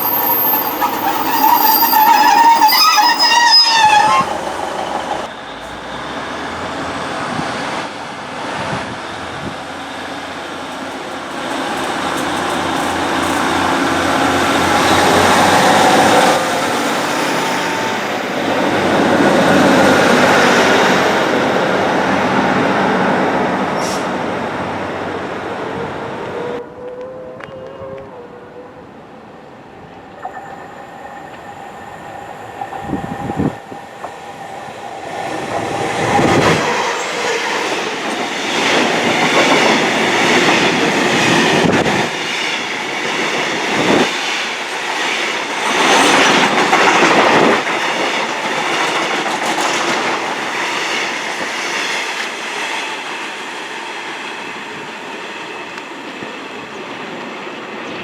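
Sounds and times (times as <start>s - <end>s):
train wheels clattering: 9.8s - 16.3s.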